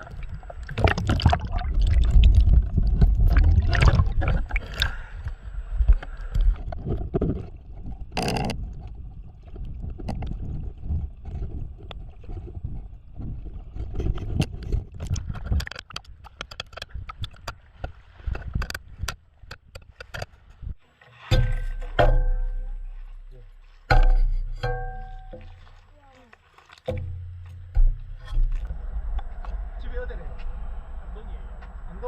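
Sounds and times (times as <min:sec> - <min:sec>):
low rumble: 0:00.0 - 0:14.4, 0:27.0 - 0:32.0
water splashing and sloshing: 0:00.0 - 0:32.0
knocks and clicks: 0:23.9 - 0:25.6.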